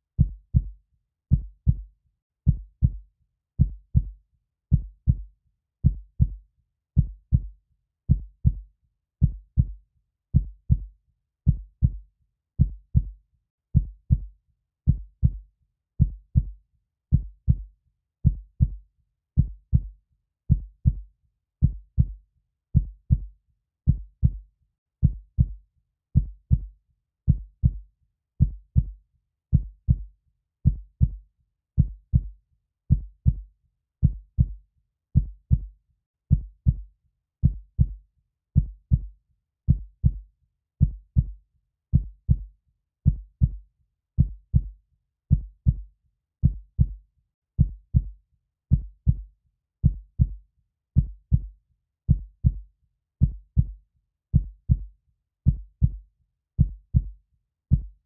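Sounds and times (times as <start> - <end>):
heartbeat double thumps: 27.3 - 27.8, 28.4 - 28.9, 37.4 - 38.0, 38.6 - 39.1, 39.7 - 40.2, 42.0 - 42.4, 43.1 - 43.6, 44.2 - 44.7, 45.3 - 45.8, 46.4 - 47.0, 47.6 - 48.1, 48.7 - 50.4, 51.0 - 51.5, 52.1 - 52.6, 53.2 - 53.8, 54.4 - 54.9, 55.5 - 56.0, 56.6 - 57.1.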